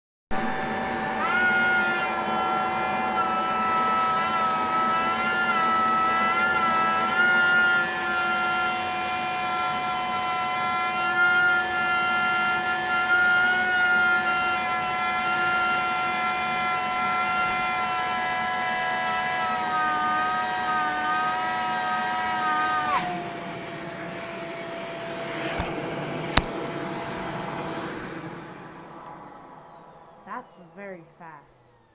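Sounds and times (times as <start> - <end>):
turbine high-pitched whine: 0.4 - 25.8.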